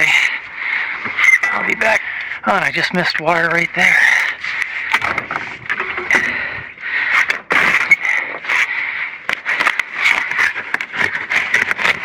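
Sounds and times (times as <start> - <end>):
scraping through debris: 9.3 - 12.0.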